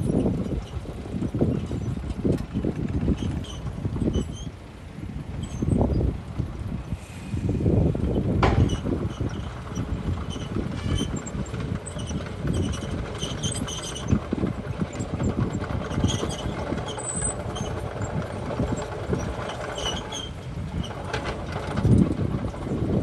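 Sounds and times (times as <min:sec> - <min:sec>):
diesel machinery rumbling: 0:00.0 - 0:23.0
short high squeaks: 0:03.2 - 0:04.6, 0:05.4 - 0:06.0, 0:08.5 - 0:14.2, 0:15.9 - 0:22.0
metal knocks and clanks: 0:08.4 - 0:09.4.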